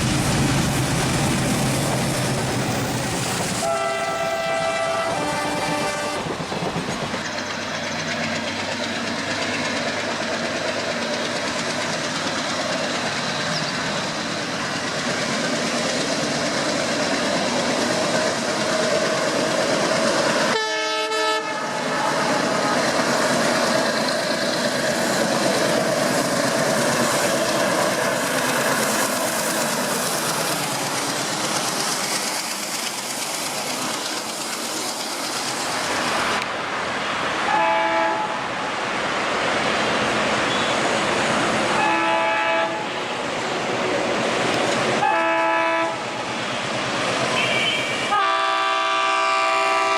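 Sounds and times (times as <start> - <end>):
train wheels on rails: 0.0 - 49.9
train horn tone: 3.6 - 6.3, 20.5 - 22.4, 37.5 - 38.4, 41.8 - 42.9, 45.0 - 46.0, 47.4 - 49.9.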